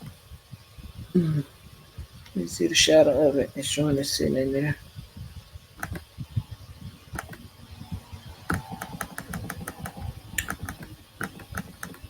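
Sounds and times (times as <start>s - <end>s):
computer mouse and keyboard clicking: 5.8s - 6.1s, 7.1s - 7.5s, 8.4s - 12.0s.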